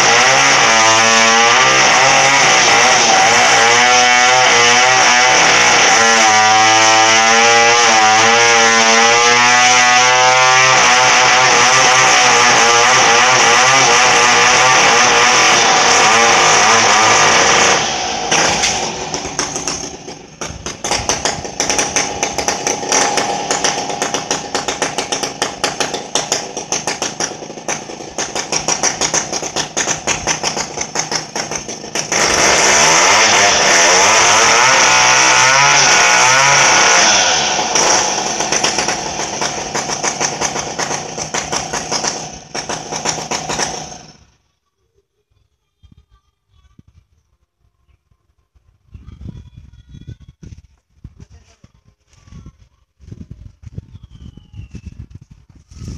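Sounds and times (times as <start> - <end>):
chainsaw engine revving and idling: 0.0 - 44.4.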